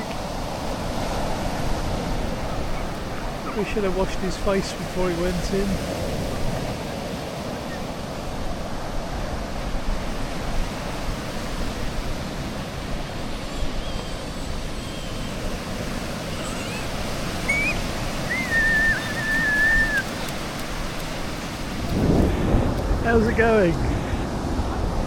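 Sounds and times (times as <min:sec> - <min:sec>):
sea surf washing on shore: 0:00.0 - 0:25.0
high wavering whistle tone: 0:16.3 - 0:20.2.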